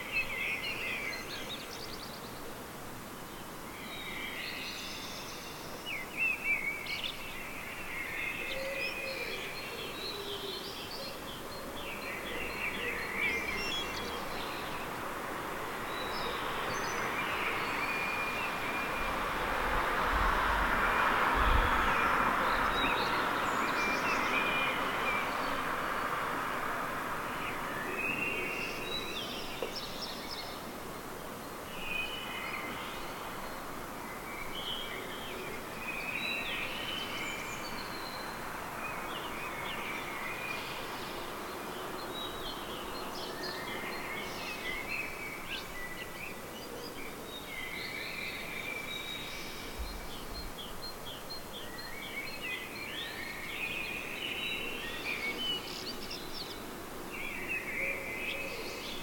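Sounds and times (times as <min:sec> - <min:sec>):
city background noise: 0:00.0 - 0:59.0
songbirds chirping: 0:00.0 - 0:59.0
passing vehicle: 0:13.2 - 0:28.9.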